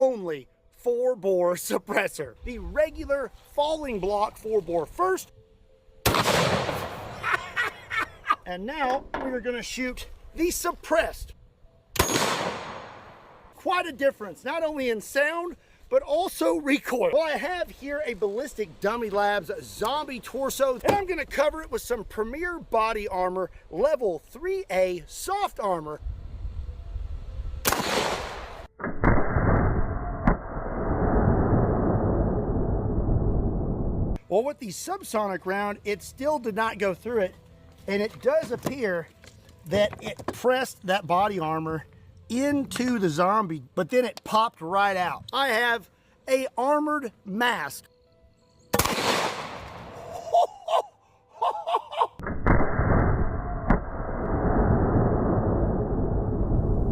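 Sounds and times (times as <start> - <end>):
rifle shot boom: 6.1 - 7.2, 12.0 - 13.4, 27.6 - 32.2, 48.8 - 50.0, 52.2 - 56.9
muffled low rumble: 29.9 - 34.2.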